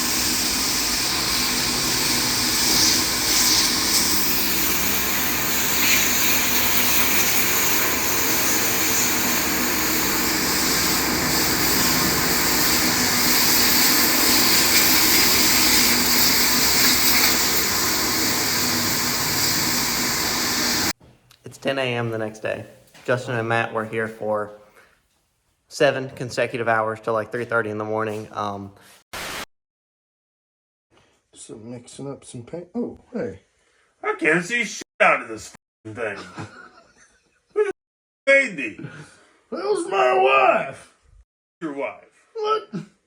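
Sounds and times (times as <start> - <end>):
loud whooshing machine noise: 0.0 - 20.9.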